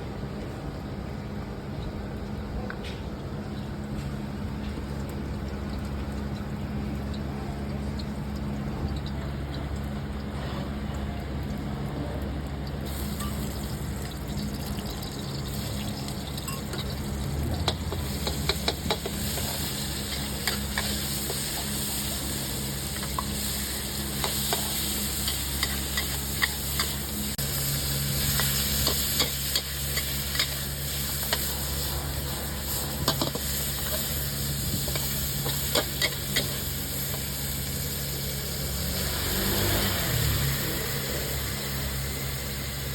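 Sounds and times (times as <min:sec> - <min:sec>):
food sizzling in a pan: 0:12.8 - 0:42.9.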